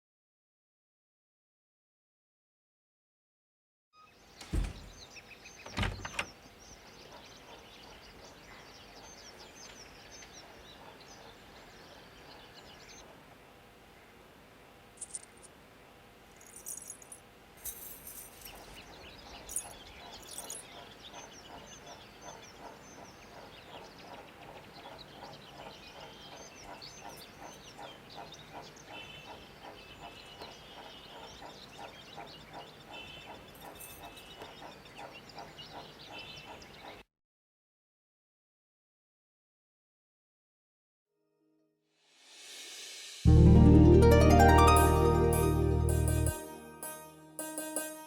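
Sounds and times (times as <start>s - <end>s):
birds chirping: 4.2s - 13.0s, 18.3s - 37.0s
rhythmic pulse: 43.3s - 48.0s.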